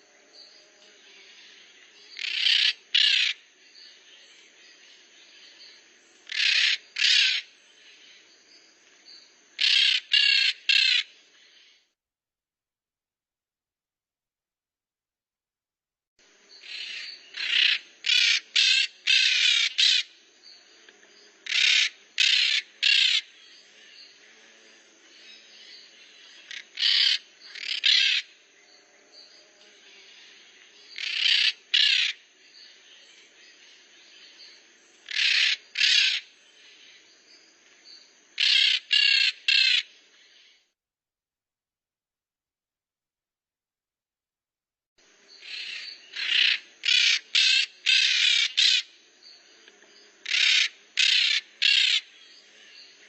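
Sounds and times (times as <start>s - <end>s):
parrots screeching: 6.3s - 7.4s, 26.5s - 28.2s, 35.1s - 36.3s, 38.4s - 39.8s, 45.5s - 48.8s, 50.3s - 52.0s.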